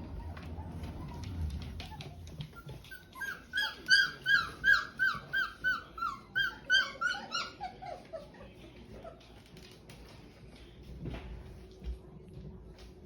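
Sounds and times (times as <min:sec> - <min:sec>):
dog whimpering: 0:00.0 - 0:09.3.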